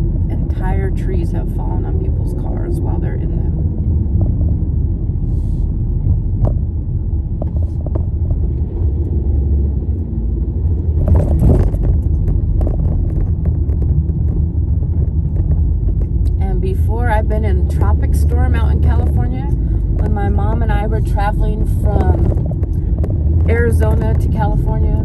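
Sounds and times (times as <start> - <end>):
car engine and road rumble: 0.0 - 25.0.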